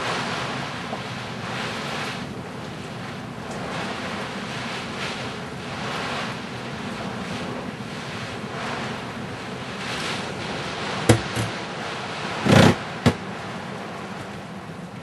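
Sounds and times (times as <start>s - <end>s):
wind and rain rushing: 0.0s - 15.0s
loud thump: 11.1s - 11.5s.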